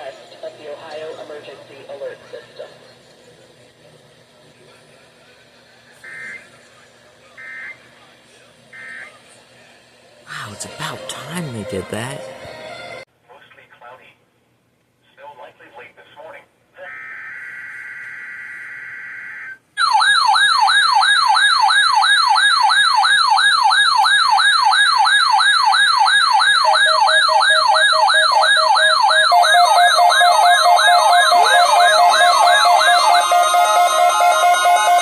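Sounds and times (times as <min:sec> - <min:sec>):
warbling siren alarm: 0:16.9 - 0:35.0.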